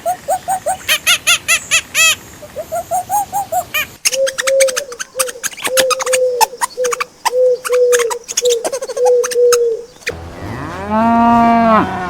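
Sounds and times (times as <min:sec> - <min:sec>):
low bird calls: 0:00.0 - 0:10.2
sharp clicks or chirps: 0:04.0 - 0:10.2.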